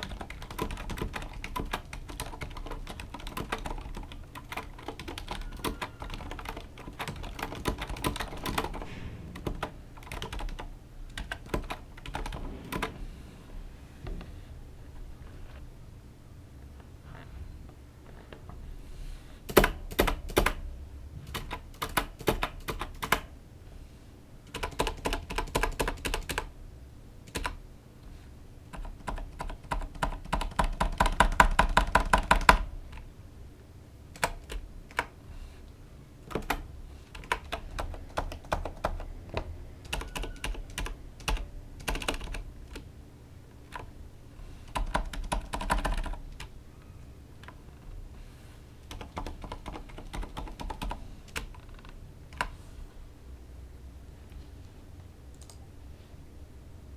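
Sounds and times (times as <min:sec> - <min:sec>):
mechanical keyboard typing: 0:00.0 - 0:12.9, 0:19.5 - 0:20.6, 0:21.3 - 0:23.3, 0:24.5 - 0:26.5, 0:27.2 - 0:27.6, 0:28.7 - 0:33.0, 0:34.1 - 0:35.1, 0:36.2 - 0:39.1, 0:39.8 - 0:42.9, 0:44.7 - 0:46.5, 0:48.8 - 0:52.6.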